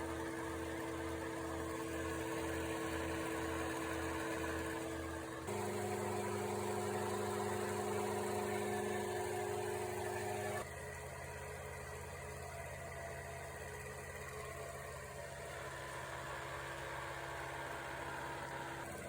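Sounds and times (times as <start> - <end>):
film projector motor humming: 0.0 - 10.8, 14.6 - 19.0.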